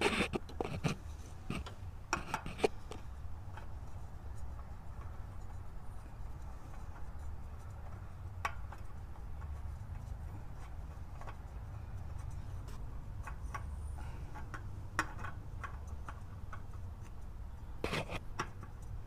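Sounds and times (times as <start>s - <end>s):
hands clicking and tapping on metal: 6.7s - 17.3s, 18.2s - 19.0s.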